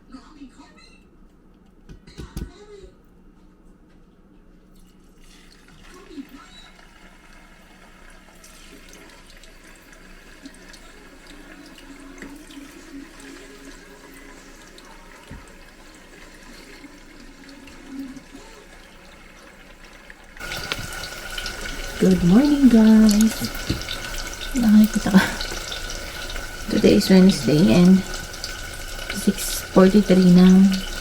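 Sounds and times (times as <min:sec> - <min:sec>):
tap water running into sink: 0:05.2 - 0:31.0.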